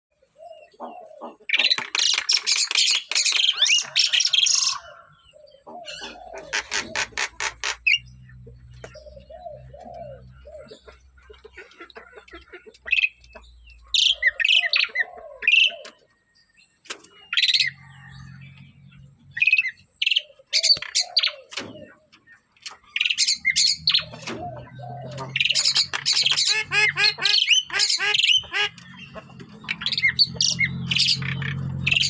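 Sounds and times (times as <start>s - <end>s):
myna calling: 23.1s - 32.0s.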